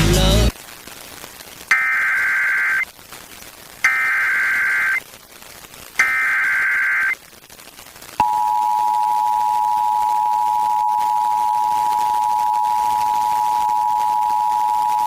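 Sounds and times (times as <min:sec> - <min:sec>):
screeching digital header: 0:01.7 - 0:02.8, 0:03.8 - 0:05.0, 0:06.0 - 0:07.2
two-tone alert signal: 0:06.0 - 0:07.2, 0:08.2 - 0:15.0.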